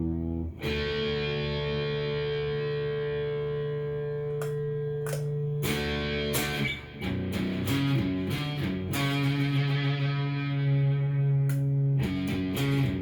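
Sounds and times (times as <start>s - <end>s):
electric guitar chords: 0.0s - 13.0s.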